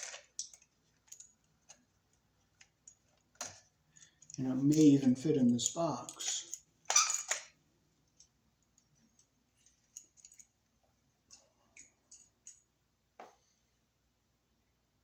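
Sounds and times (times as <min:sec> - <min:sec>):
small clicks and taps: 0:00.0 - 0:04.8.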